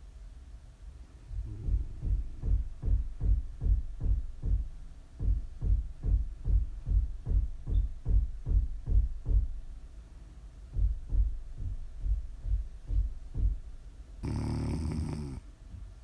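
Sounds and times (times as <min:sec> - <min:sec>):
low thumping beat: 0:01.4 - 0:09.5, 0:10.7 - 0:13.7.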